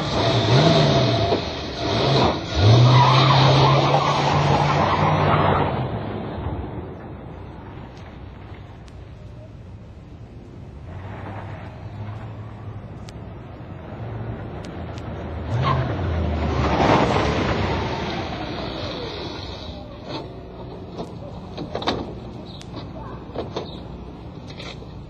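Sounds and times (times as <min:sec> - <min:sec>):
tyre squeal: 0:00.0 - 0:05.8
car driving past: 0:10.8 - 0:20.7
sharp clicks and knocks: 0:20.0 - 0:24.9.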